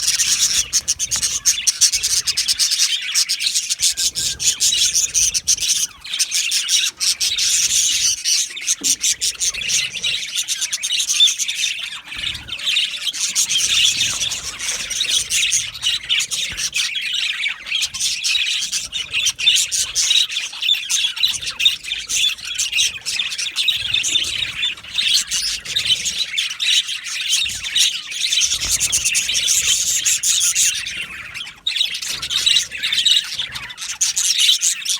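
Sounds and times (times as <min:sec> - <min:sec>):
budgerigars chattering and chirping: 0:00.0 - 0:34.9.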